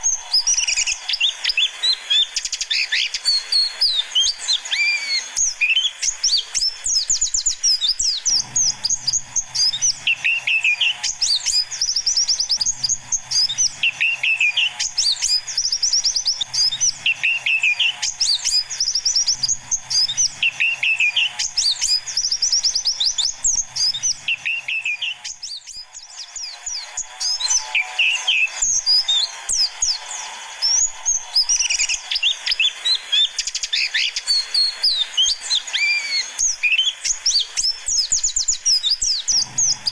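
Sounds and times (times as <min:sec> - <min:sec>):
birds twittering: 0:00.0 - 0:39.9
faint low hum: 0:07.3 - 0:31.9.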